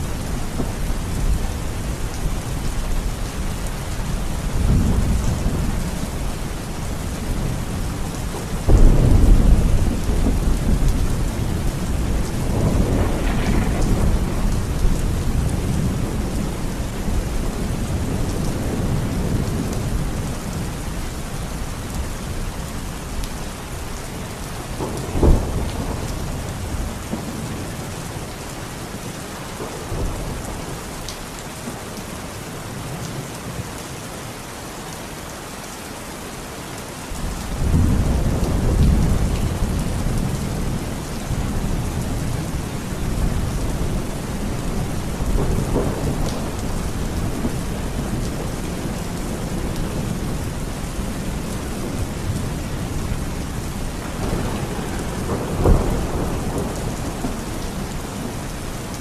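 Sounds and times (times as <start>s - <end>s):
steady rain falling: 0.0s - 59.0s
thunder rumbling: 4.2s - 20.6s, 24.8s - 27.8s, 37.2s - 59.0s.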